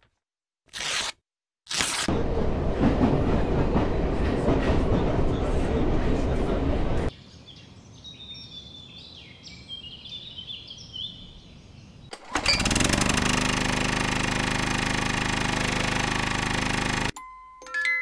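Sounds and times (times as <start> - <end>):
loud motor drone: 12.4 - 17.1.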